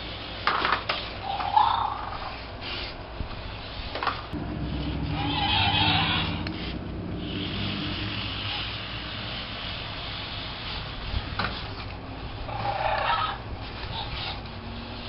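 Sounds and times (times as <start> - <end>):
toy motor whirring: 0.4 - 4.2, 5.1 - 15.0
loud rasping sound: 4.4 - 8.9.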